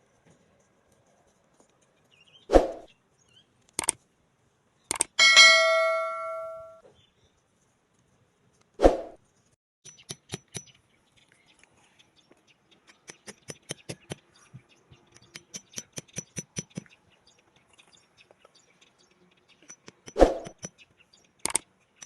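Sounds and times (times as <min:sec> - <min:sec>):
small sharp clicks and snips: 0:03.6 - 0:04.0, 0:04.9 - 0:05.2, 0:21.4 - 0:22.0.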